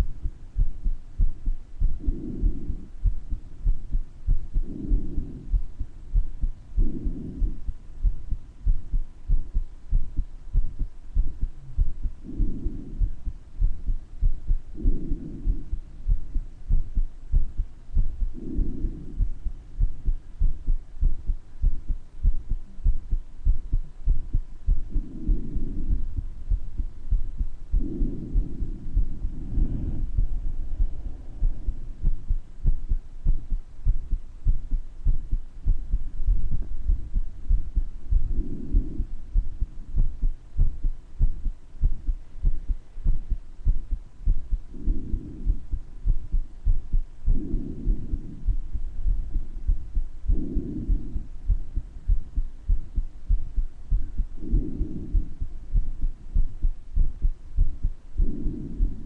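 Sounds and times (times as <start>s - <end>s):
heartbeat thumps: 0.0s - 59.0s
soft breathing: 0.0s - 59.0s.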